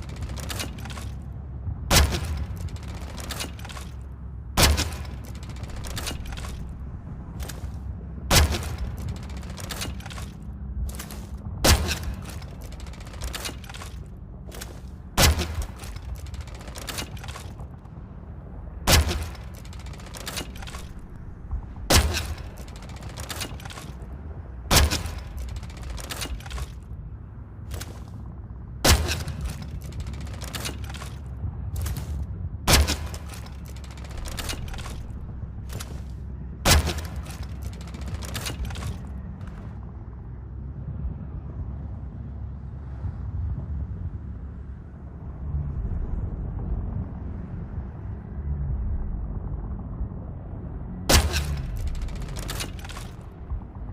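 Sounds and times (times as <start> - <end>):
steady low hum: 0.0 - 53.9
small clicks: 51.1 - 53.4.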